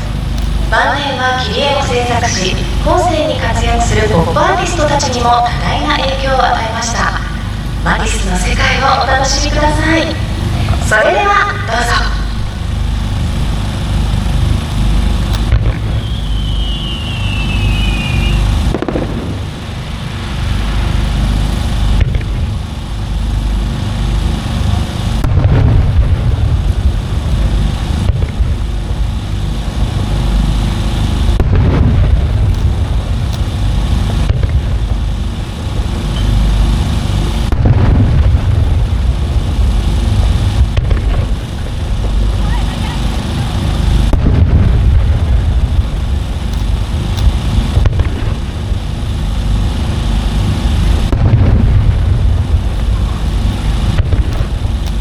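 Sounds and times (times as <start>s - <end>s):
fireworks rumble: 0.0s - 55.0s
heavy fireworks booms: 0.0s - 55.0s
falling whistle: 15.9s - 18.7s.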